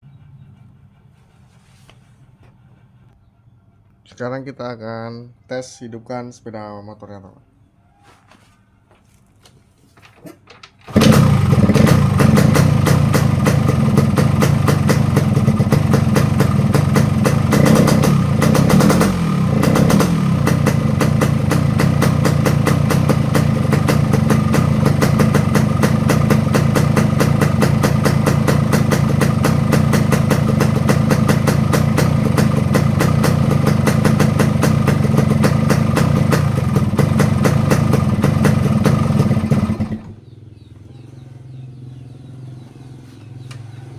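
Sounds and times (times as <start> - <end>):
motorcycle engine idling roughly: 10.9 - 41.6.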